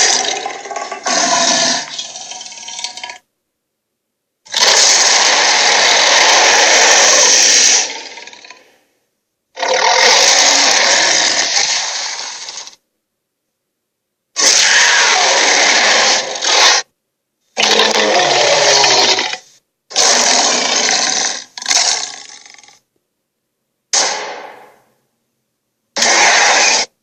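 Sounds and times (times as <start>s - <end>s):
dragon roars: 4.5s - 8.6s, 9.6s - 12.5s, 14.4s - 16.8s, 17.6s - 22.8s, 26.0s - 26.9s.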